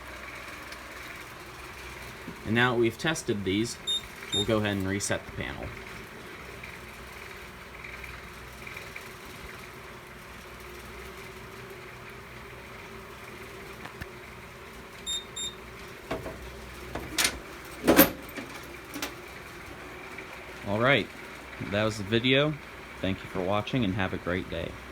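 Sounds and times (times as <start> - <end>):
short high keypad beeps: 3.9 - 4.5, 15.1 - 15.6
faint steady hum: 10.6 - 24.9
loud clunk: 16.1 - 19.2.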